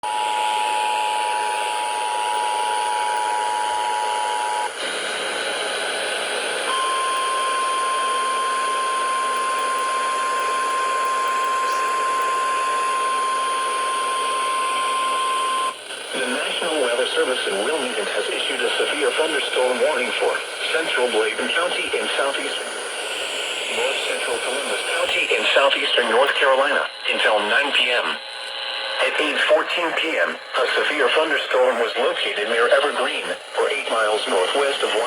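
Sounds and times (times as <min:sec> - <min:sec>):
steady warning tone: 0:00.0 - 0:35.0
radio hiss: 0:11.3 - 0:35.0.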